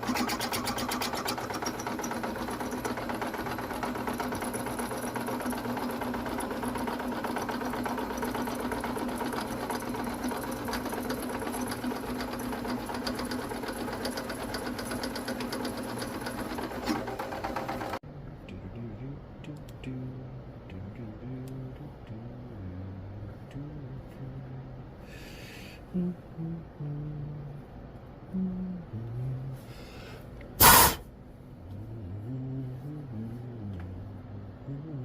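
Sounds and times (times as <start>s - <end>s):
small motorised machine clattering: 0.0s - 18.0s.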